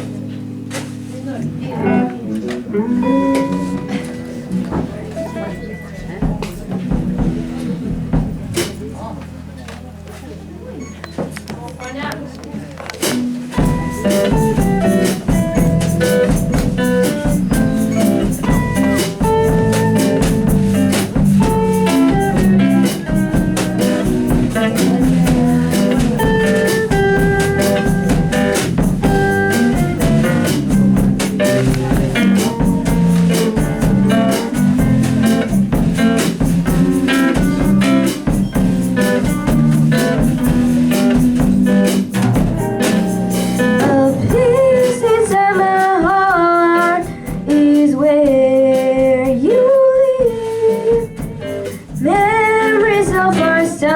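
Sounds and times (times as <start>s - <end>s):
drum kit beat: 0.0s - 1.2s, 3.0s - 9.4s, 13.0s - 53.9s
blues guitar: 0.0s - 53.9s
person singing: 43.8s - 51.2s, 52.0s - 53.9s.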